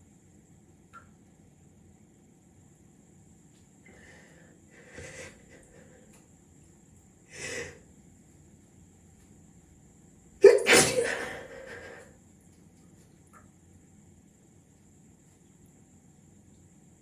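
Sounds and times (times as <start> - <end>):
person sneezing loudly: 10.4 - 12.0.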